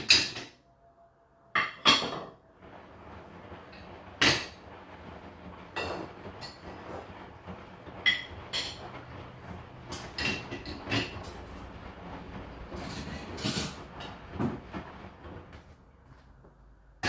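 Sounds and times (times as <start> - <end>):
dishes and glasses clinking: 1.5 - 2.4.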